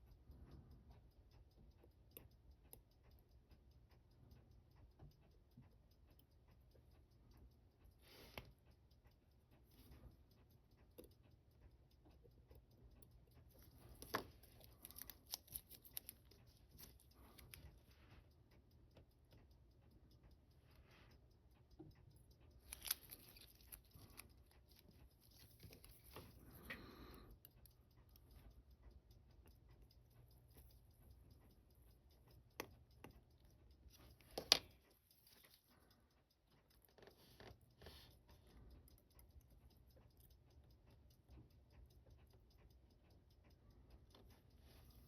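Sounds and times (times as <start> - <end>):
metal tools tapping watch parts: 10.8 - 17.9, 21.8 - 35.9.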